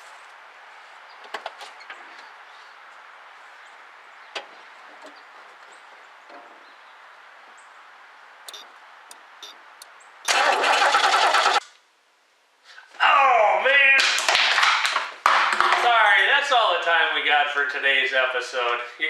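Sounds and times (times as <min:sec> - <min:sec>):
car engine cranking on starter: 0:10.3 - 0:11.6.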